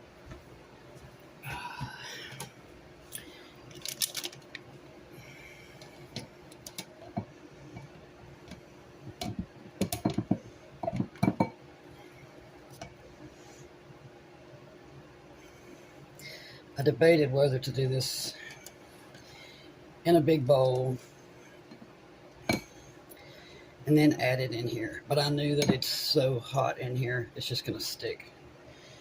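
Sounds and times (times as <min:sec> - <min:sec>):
kitchenware clinking on a counter: 0:09.2 - 0:11.6.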